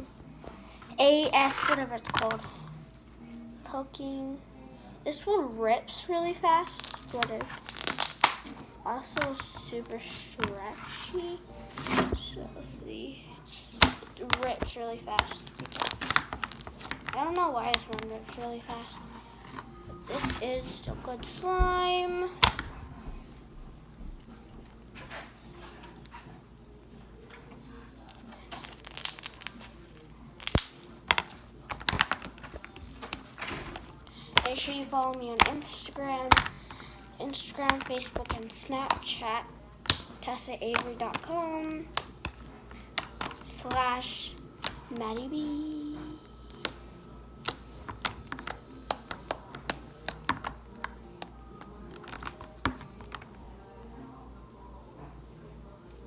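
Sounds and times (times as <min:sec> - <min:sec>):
slime crackling and popping: 0:06.6 - 0:08.6, 0:13.8 - 0:18.4, 0:28.0 - 0:44.8
slime clicking and popping: 0:06.8 - 0:08.5, 0:15.5 - 0:17.0, 0:28.5 - 0:29.7, 0:30.4 - 0:30.8.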